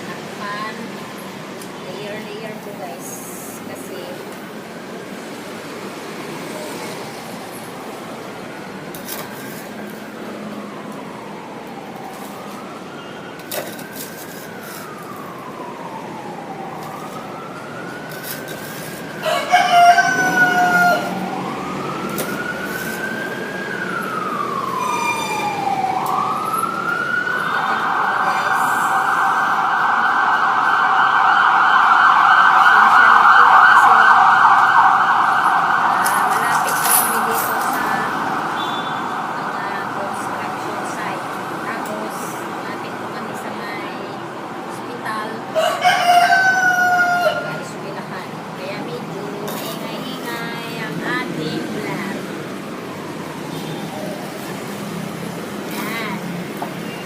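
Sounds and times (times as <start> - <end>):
emergency siren wailing and yelping: 0.0 - 57.0
rooster crowing: 19.1 - 23.1, 45.6 - 47.6.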